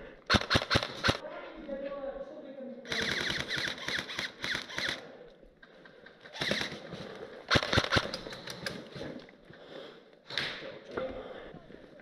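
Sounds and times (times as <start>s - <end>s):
airsoft guns firing bursts: 0.3s - 1.2s, 2.9s - 5.1s, 6.3s - 8.4s.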